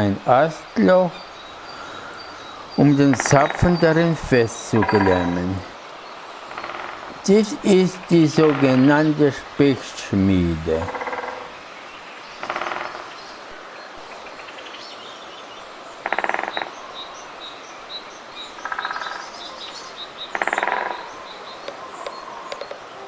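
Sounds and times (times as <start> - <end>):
small birds chirping: 0.0 - 5.7, 6.5 - 11.6
woodpecker pecking: 0.0 - 5.7, 6.5 - 11.6.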